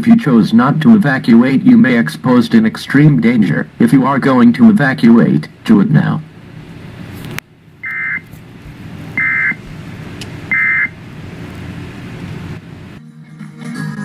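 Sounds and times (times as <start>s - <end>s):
low steady hum: 0.0s - 13.0s
digital data tone bursts: 9.2s - 9.6s, 10.5s - 11.0s.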